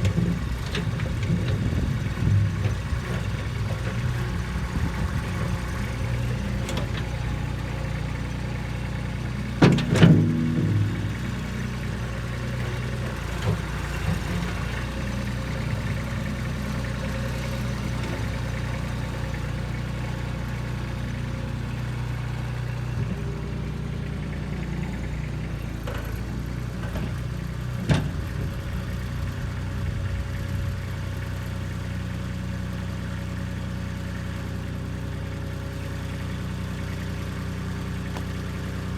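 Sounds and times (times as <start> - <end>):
tractor diesel engine running: 0.0 - 38.9
sharp knocks: 9.6 - 12.6
metallic clank: 9.6 - 14.2.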